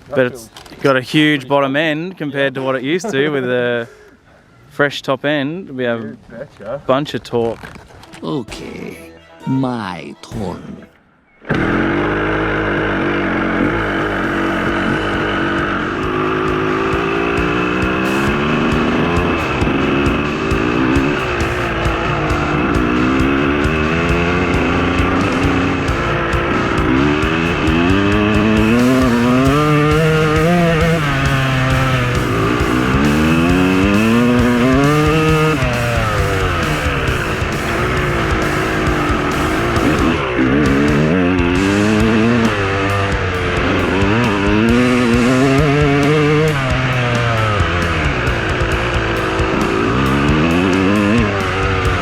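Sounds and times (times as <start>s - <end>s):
background music: 8.0s - 12.1s, 13.6s - 52.0s
dirt bike engine revving: 11.4s - 52.0s.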